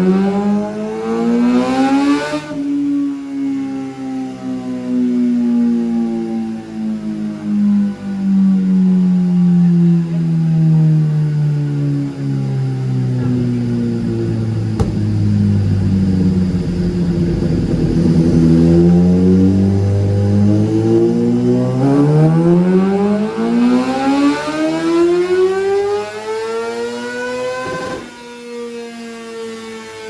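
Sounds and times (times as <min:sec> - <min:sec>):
motorcycle engine revving: 0:00.0 - 0:03.1, 0:09.3 - 0:28.4.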